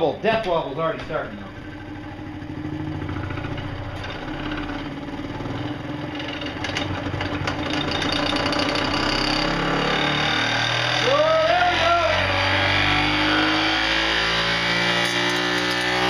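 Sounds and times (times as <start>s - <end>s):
electric motor spinning record: 2.8s - 13.2s.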